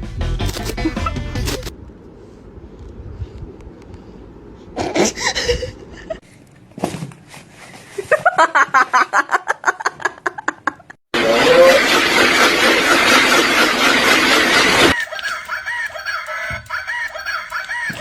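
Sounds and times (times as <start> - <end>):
person laughing: 0.5 - 1.7, 4.8 - 6.2, 8.0 - 18.0
loud steady noise: 11.2 - 18.0.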